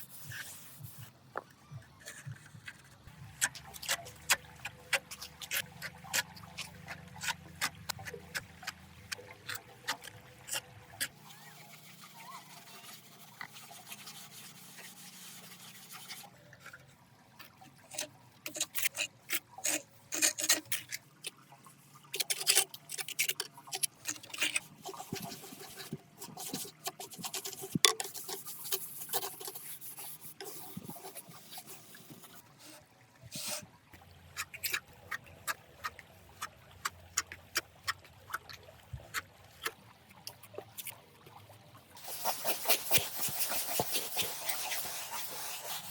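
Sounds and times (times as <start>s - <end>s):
faint trickle of water: 0.2s - 42.6s
rubbing and scraping: 9.5s - 21.4s, 22.2s - 33.7s, 42.0s - 45.9s.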